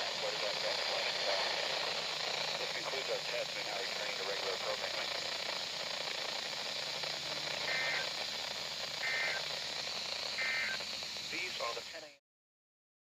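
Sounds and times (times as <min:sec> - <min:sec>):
radio hiss: 0:00.0 - 0:12.2
two-tone digital data bursts: 0:07.2 - 0:11.8.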